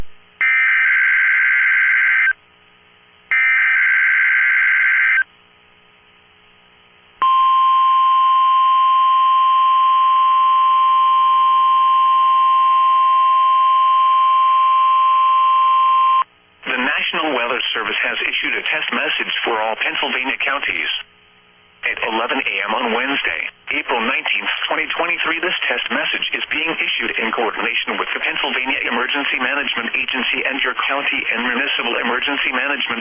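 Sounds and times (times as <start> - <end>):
steady alarm tone: 3.3 - 5.2.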